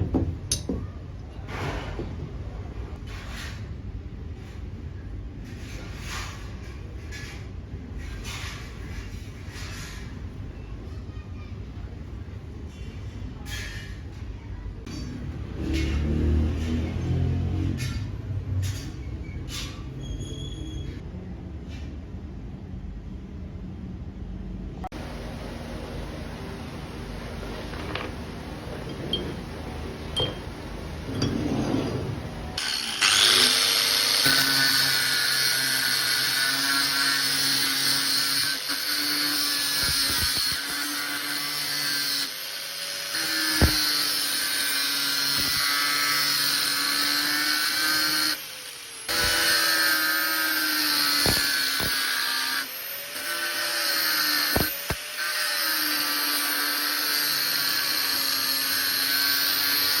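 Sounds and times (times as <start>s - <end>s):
electric power tool running: 32.6s - 37.8s, 38.4s - 60.0s.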